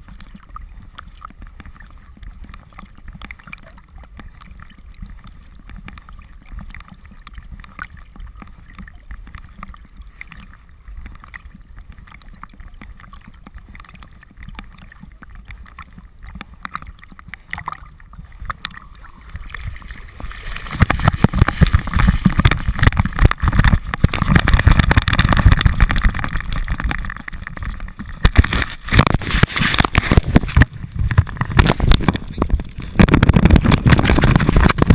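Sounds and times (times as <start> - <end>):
water sloshing and gurgling: 0.0 - 34.9
splashing against camera housing: 7.3 - 34.9.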